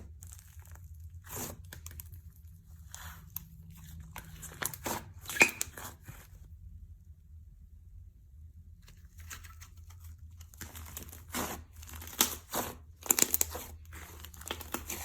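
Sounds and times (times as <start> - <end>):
slime squishing and tearing: 0.0 - 6.3, 9.4 - 15.0.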